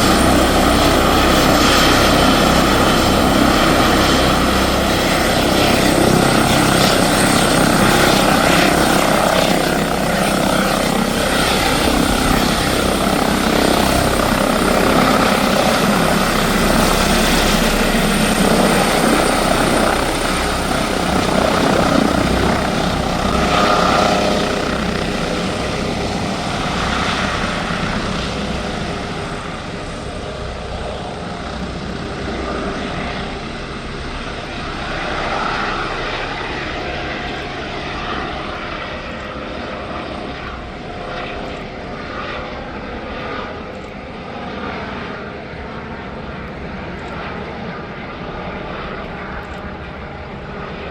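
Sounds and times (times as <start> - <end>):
helicopter turbine and rotors: 0.0 - 50.9.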